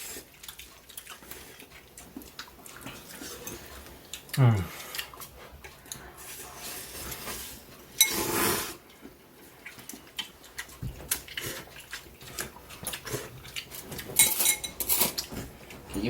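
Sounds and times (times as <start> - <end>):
utensils clinking against bowls: 6.2 - 8.8, 12.3 - 15.5.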